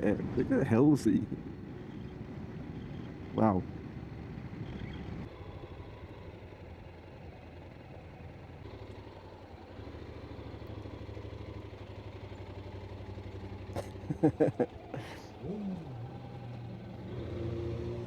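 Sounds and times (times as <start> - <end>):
motorcycle engine running: 3.9 - 18.0.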